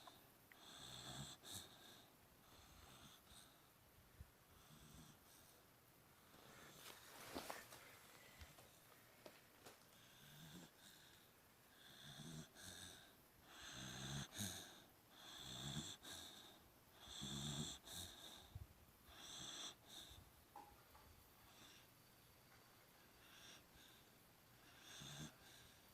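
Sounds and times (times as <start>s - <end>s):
dog snoring: 0.6s - 3.6s, 4.5s - 5.6s, 10.0s - 11.2s, 11.8s - 18.5s, 19.1s - 20.2s, 24.6s - 25.8s.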